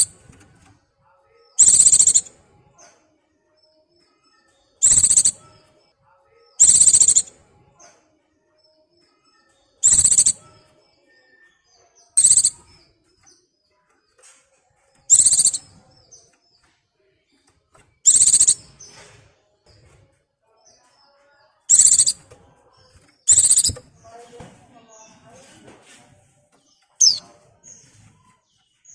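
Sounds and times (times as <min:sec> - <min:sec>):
faint short chirps: 0:09.8 - 0:10.4, 0:18.1 - 0:18.6, 0:21.7 - 0:22.2, 0:23.3 - 0:23.8, 0:27.0 - 0:27.2
bird calling rapid high notes: 0:21.7 - 0:22.2, 0:23.3 - 0:23.8.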